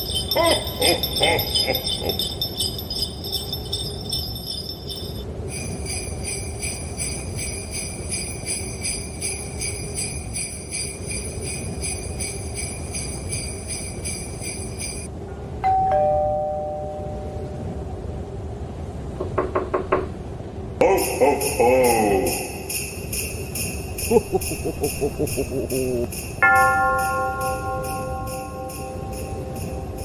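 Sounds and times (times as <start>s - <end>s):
sleigh bells jingling: 0.0s - 15.1s, 20.8s - 30.0s
two-note chime: 15.6s - 17.5s, 26.4s - 29.9s.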